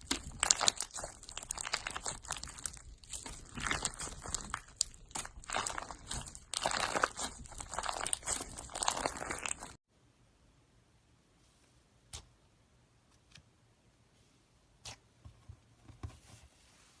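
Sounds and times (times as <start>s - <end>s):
slime crackling and popping: 0.0s - 9.8s.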